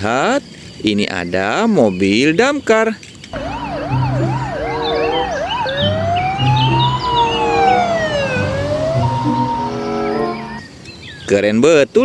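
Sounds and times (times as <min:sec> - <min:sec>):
electronic siren wailing: 0:03.4 - 0:10.6.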